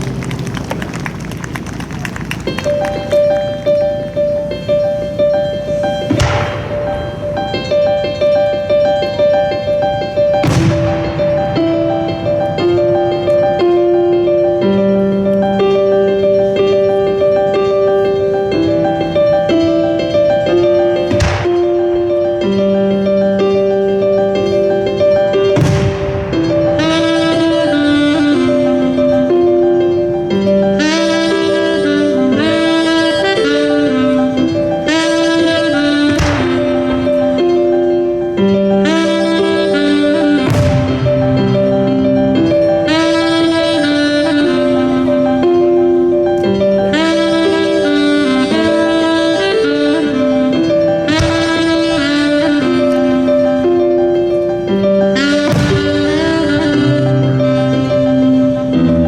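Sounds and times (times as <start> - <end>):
slow jazz piano melody: 0.0 - 59.0
firework bang: 6.1 - 7.3, 10.4 - 11.9, 21.1 - 21.7, 25.5 - 27.7, 36.1 - 37.0, 40.4 - 41.5, 55.4 - 56.7.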